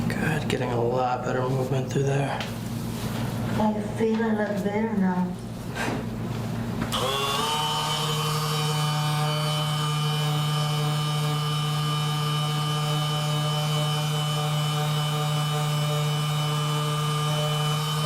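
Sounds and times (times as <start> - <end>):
small electric motor humming: 6.9 - 18.0.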